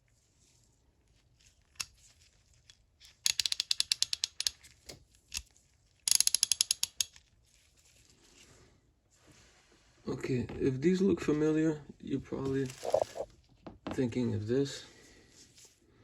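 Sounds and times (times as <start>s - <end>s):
ratchet clicking: 3.2s - 4.6s, 6.1s - 7.2s.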